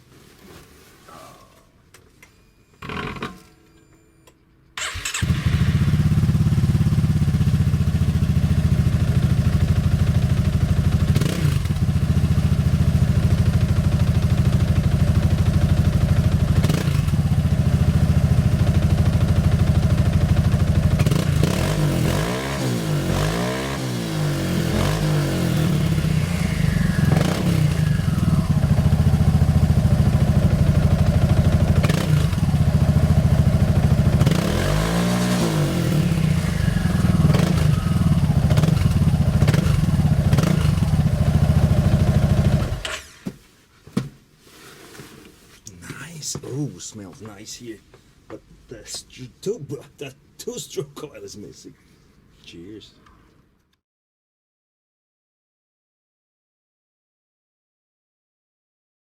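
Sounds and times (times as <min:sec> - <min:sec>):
scooter engine idling and revving: 0:04.8 - 0:43.1.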